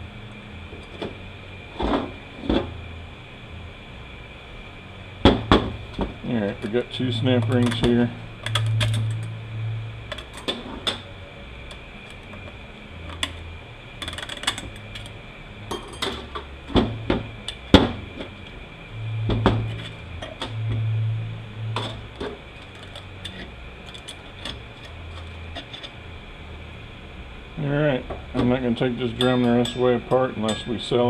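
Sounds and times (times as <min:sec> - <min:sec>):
metal parts clinking and clattering: 0:14.0 - 0:15.1.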